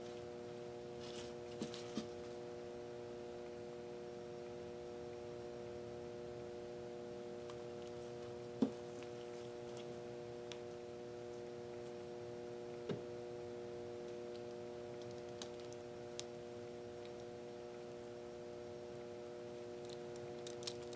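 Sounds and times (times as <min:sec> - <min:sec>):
steady hum of even tones: 0:00.0 - 0:20.9.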